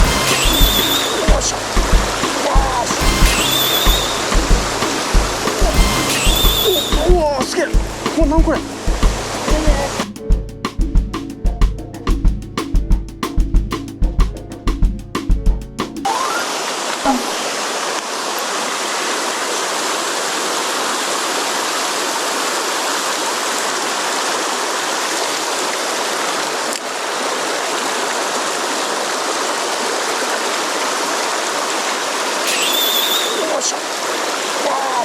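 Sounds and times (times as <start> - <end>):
stream water rushing: 0.0 - 10.2, 15.8 - 35.0
percussive music: 0.0 - 16.1.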